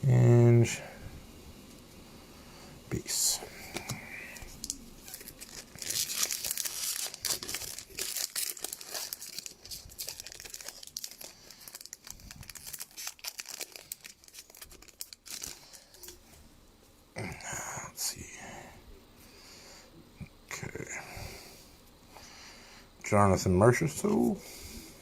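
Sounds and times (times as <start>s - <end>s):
card pack wrappers crinkling: 3.7s - 16.2s.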